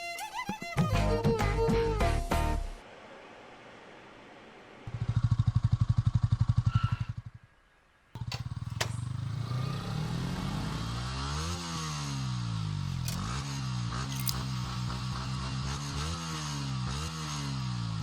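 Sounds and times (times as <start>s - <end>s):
sharp click: 13.0s - 13.3s, 14.1s - 15.4s
small engine running: 14.0s - 15.7s.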